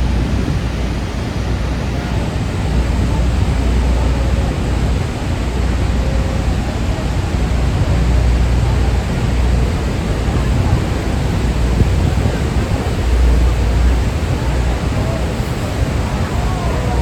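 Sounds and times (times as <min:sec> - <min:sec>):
waterfall roaring: 0:00.0 - 0:17.0.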